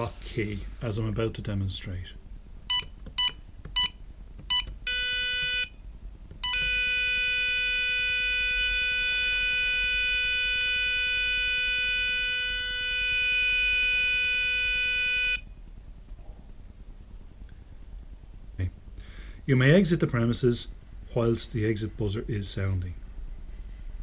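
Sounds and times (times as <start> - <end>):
alarm keypad beeps: 2.7 - 5.7, 6.4 - 8.8
exit buzzer steady tone: 4.5 - 5.8, 6.4 - 15.6.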